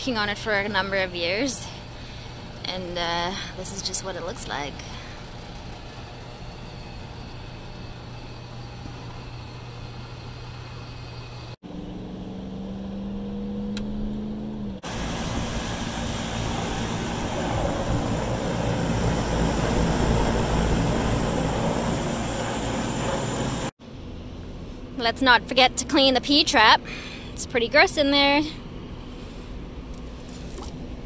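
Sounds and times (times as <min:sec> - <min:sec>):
hvac fan and motor noise: 0:00.0 - 0:11.9, 0:14.8 - 0:31.0
low rumble: 0:11.7 - 0:24.9.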